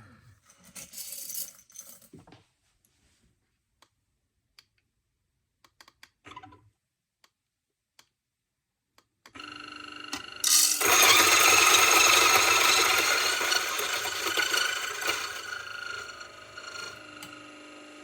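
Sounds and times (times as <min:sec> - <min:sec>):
coffee grinder motor whirring: 0:09.4 - 0:18.0
coffee beans grinding: 0:10.4 - 0:17.0.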